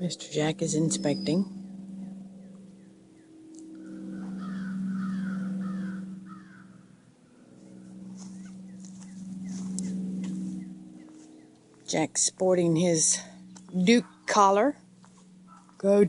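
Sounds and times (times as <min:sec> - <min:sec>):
low hum: 0:00.0 - 0:16.0
crow cawing: 0:03.7 - 0:06.9, 0:15.4 - 0:15.8.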